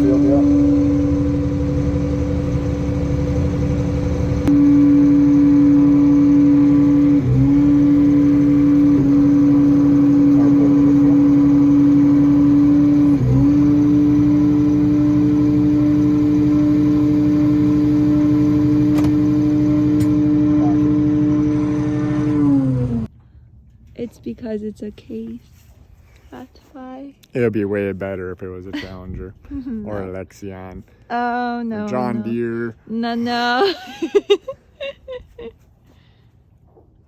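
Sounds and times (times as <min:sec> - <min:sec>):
heavy diesel engine droning: 0:00.0 - 0:23.1.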